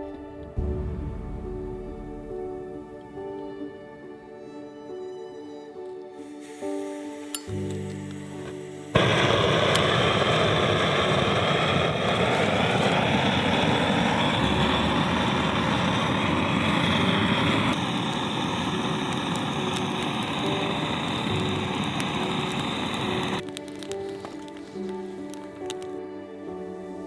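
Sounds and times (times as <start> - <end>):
gas torch flame hissing: 6.2 - 26.0.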